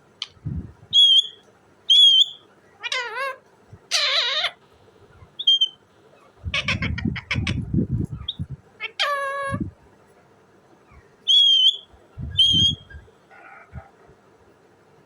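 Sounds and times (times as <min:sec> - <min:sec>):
parrot wavering call: 0:00.2 - 0:04.6, 0:05.4 - 0:07.6, 0:08.2 - 0:09.6, 0:10.9 - 0:13.8
parrot whistles: 0:00.9 - 0:02.4, 0:05.4 - 0:05.8, 0:11.3 - 0:13.0
parrot sharp chatter: 0:01.0 - 0:04.6, 0:05.3 - 0:09.6
parrot screech: 0:02.0 - 0:04.6.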